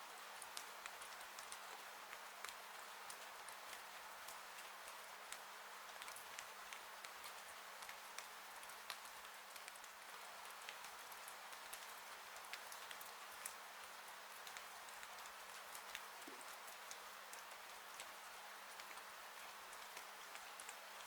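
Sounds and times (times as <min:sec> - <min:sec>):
raindrops ticking on roof: 0:00.2 - 0:21.0.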